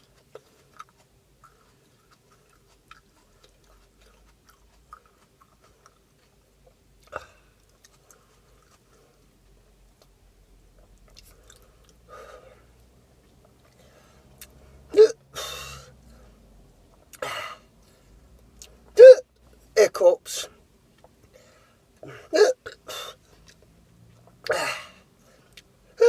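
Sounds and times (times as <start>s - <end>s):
person chewing with wet mouth clicks: 0.0s - 9.0s, 10.0s - 12.0s, 23.4s - 23.7s.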